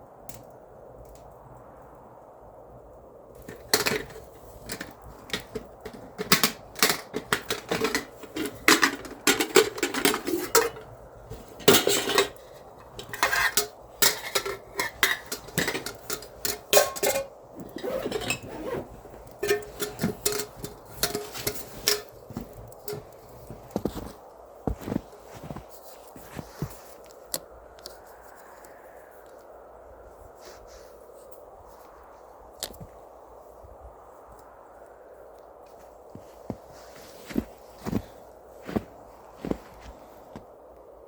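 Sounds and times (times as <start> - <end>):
pots and pans clinking and scraping: 3.4 - 23.1.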